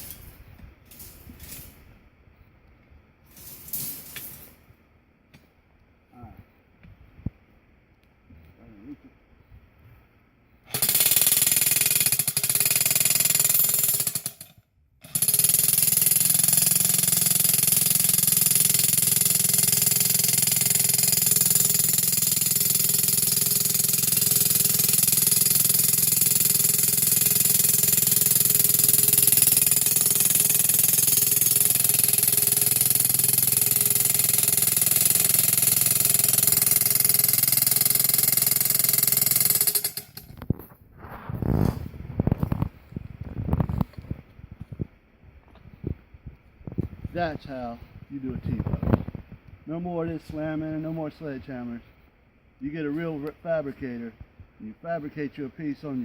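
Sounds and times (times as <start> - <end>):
jackhammer driving a metal post: 10.7 - 40.4.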